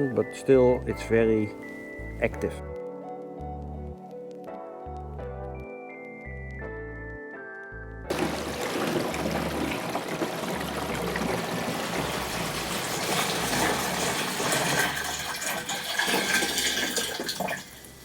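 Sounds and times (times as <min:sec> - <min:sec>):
water gushing into tank: 0:08.1 - 0:18.0.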